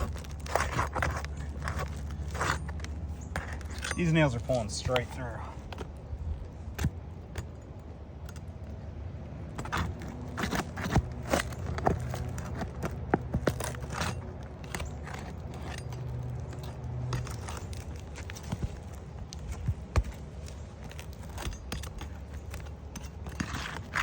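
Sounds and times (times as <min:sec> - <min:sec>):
metal tool scraping shingles: 0:00.0 - 0:05.9, 0:09.6 - 0:24.0
low steady hum: 0:00.0 - 0:24.0.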